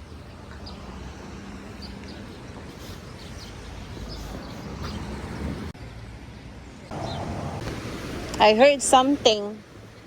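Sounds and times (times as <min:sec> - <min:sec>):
small birds chirping: 0:00.0 - 0:05.7, 0:06.3 - 0:07.3.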